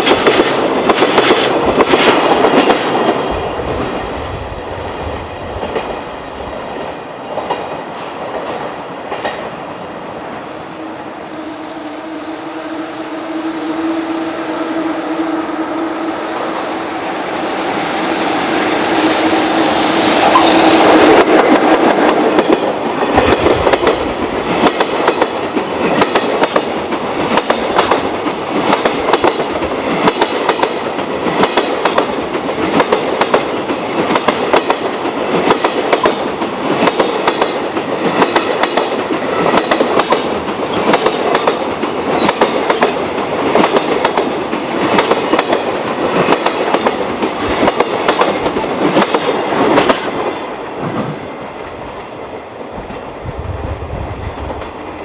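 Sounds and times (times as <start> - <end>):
train wheels clattering over rail joints: 0.0 - 4.1, 20.2 - 51.8.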